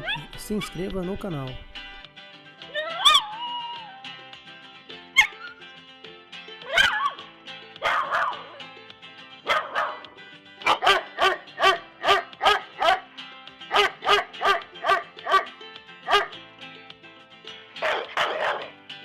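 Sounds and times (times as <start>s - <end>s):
dog barking: 0.0s - 0.3s, 6.7s - 7.2s, 7.8s - 8.5s, 9.5s - 10.0s, 10.6s - 13.1s, 13.7s - 15.5s, 16.1s - 16.3s, 17.8s - 18.7s
background music: 0.0s - 19.0s.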